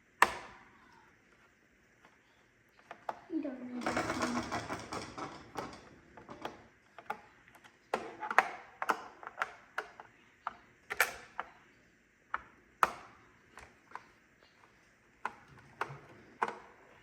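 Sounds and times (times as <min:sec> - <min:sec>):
plastic clicks and knocks: 0:02.8 - 0:11.6, 0:12.3 - 0:14.2, 0:15.2 - 0:17.0.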